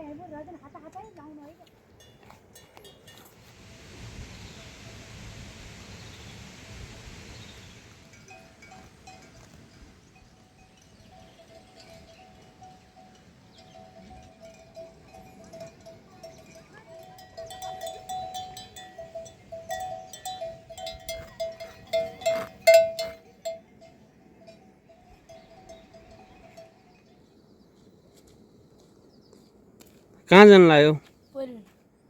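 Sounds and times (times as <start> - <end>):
livestock bells clanking: 8.1 - 26.9.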